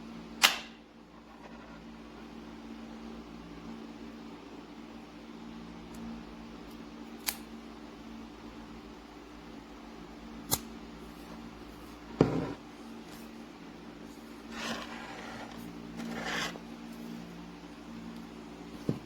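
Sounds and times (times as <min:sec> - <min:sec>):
steady low hum: 0:00.0 - 0:19.0
knock on a desk: 0:12.2 - 0:12.6
short scraping rubs: 0:14.5 - 0:16.6.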